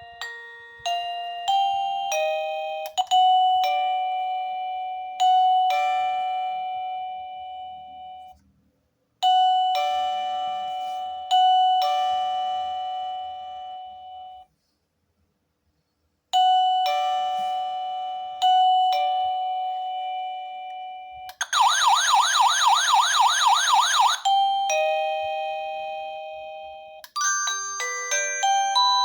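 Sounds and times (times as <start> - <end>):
warbling siren-like tone: 21.4 - 24.2
ding-dong chimes: 24.3 - 29.0.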